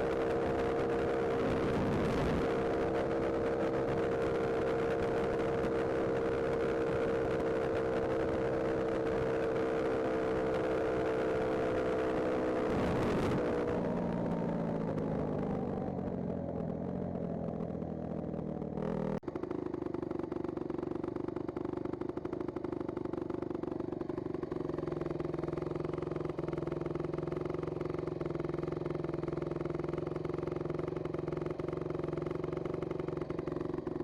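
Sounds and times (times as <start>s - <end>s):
motorcycle engine running: 0.0s - 34.0s.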